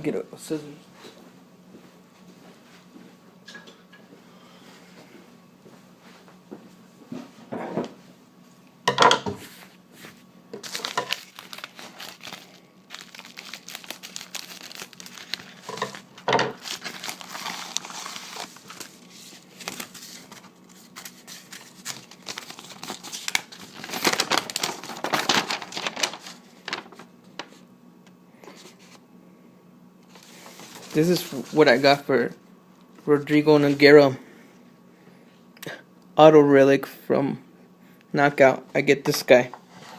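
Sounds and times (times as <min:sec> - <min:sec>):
packaging crinkling and tearing: 0:10.6 - 0:27.6.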